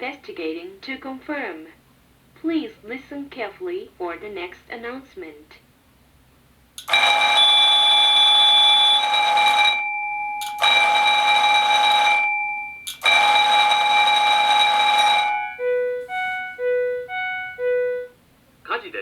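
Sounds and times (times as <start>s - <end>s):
fire alarm bell ringing: 6.8s - 18.2s.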